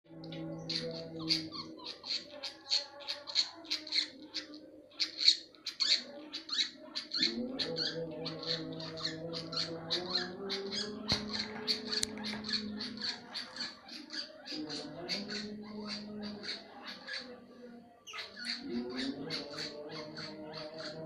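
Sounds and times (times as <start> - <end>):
bird chirping high calls: 0.2 - 21.0.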